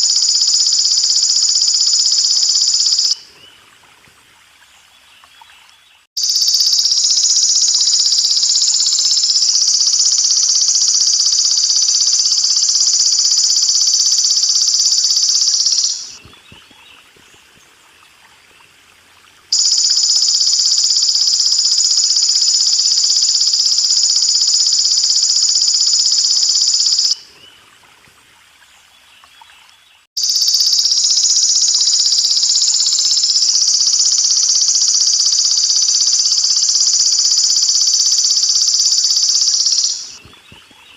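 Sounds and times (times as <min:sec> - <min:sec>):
grasshopper high-pitched buzzing: 0:00.0 - 0:03.2, 0:06.2 - 0:16.2, 0:19.5 - 0:27.2, 0:30.2 - 0:40.2
trickle of running water: 0:00.0 - 0:30.1, 0:31.0 - 0:40.9.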